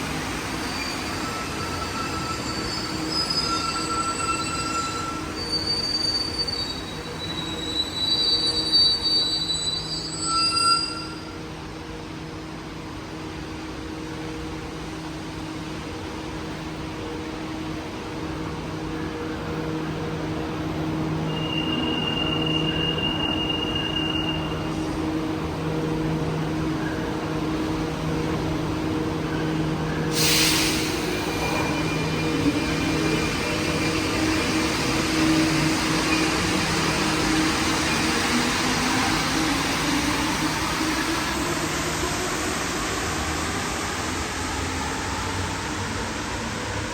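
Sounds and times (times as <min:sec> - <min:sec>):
sudden hiss: 0:30.2 - 0:31.5.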